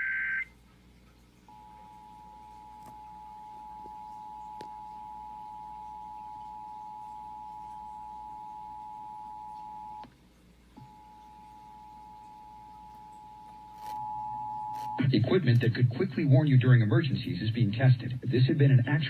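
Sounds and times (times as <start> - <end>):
two-tone alert signal: 0.0 - 0.5.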